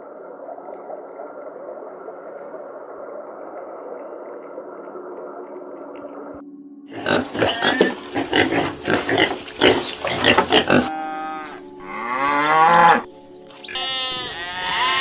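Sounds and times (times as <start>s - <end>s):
farm animals calling: 6.9s - 15.0s.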